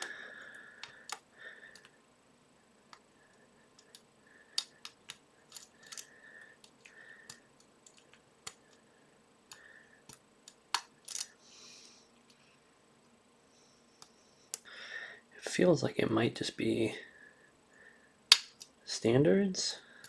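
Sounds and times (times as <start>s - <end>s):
lock pick clicking and scraping: 4.6s - 8.6s, 10.8s - 11.3s.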